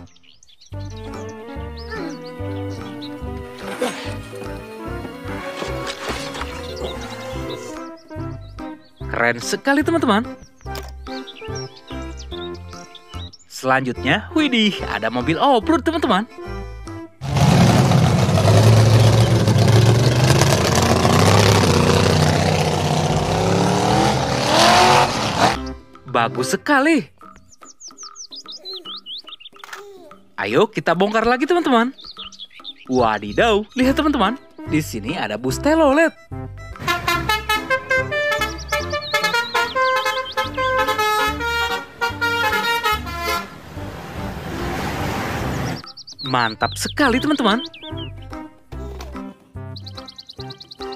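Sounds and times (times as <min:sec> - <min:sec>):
bus horn tooting melody: 0:01.4 - 0:07.8, 0:36.0 - 0:43.8
engine droning: 0:17.2 - 0:25.7.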